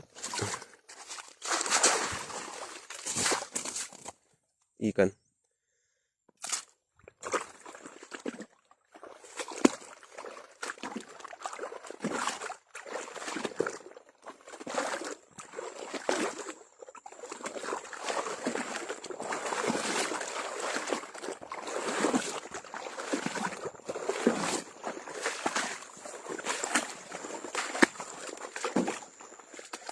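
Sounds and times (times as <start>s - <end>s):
water sloshing and trickling: 0.0s - 4.2s, 6.4s - 29.9s.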